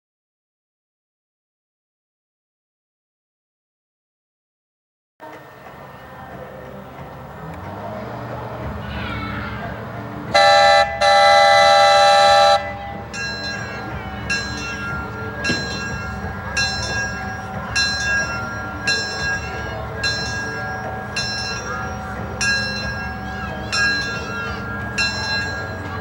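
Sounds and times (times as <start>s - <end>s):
engine running low: 5.2s - 26.0s
locomotive bell ringing: 5.3s - 26.0s
locomotive chime whistle: 9.6s - 26.0s.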